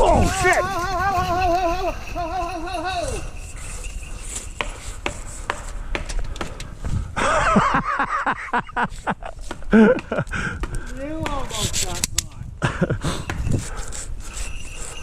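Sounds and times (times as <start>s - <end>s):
person's wavering cry: 0.0s - 3.4s
voices: 0.0s - 4.6s
scuffling in brush and sticks: 0.0s - 7.0s, 8.7s - 12.2s.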